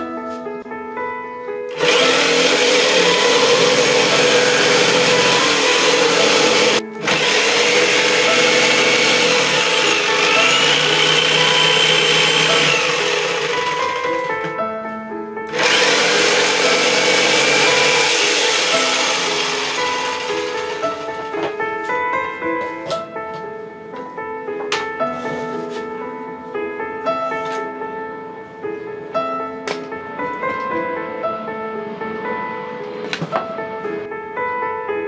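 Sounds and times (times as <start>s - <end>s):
background music: 0.0s - 35.0s
power tool motor whining: 1.7s - 14.4s, 15.5s - 21.2s.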